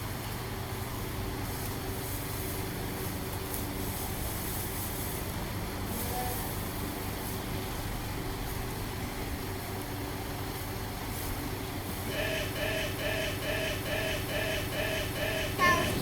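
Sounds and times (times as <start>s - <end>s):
mechanical drone of motor: 12.0s - 16.0s.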